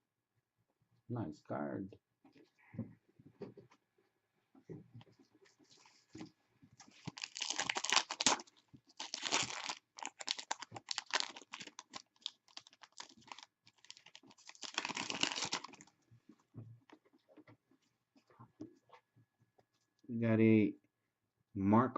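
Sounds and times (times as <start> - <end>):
foil wrapper crinkling and tearing: 6.8 - 15.9.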